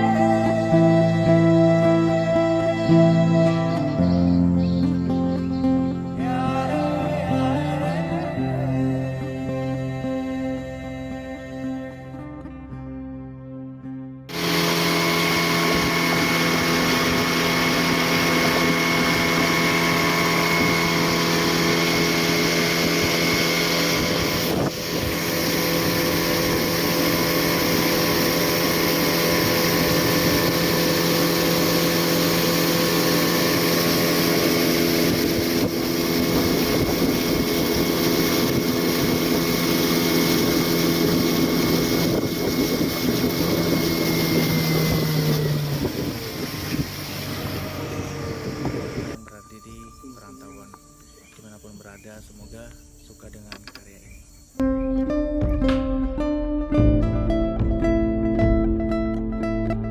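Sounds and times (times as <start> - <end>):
outboard motor running: 0.0 - 10.4, 14.3 - 49.2
rushing wind: 14.3 - 49.2
water noise: 14.3 - 49.2.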